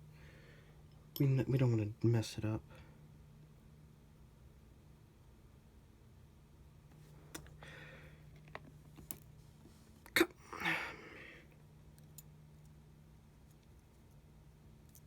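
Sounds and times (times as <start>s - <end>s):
breathy vocal sound: 10.3s - 11.4s.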